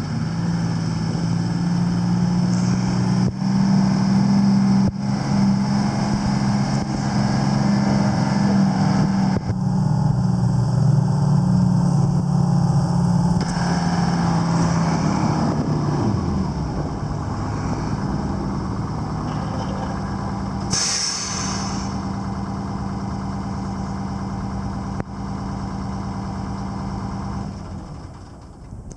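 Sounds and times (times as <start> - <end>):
diesel engine idling: 0.0 - 28.9
air release hiss: 20.7 - 22.0.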